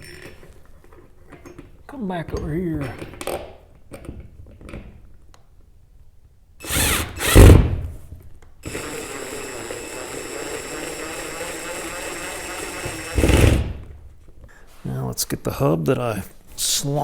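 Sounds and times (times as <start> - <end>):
power drill driving a screw: 6.6 - 8.0, 8.6 - 13.9.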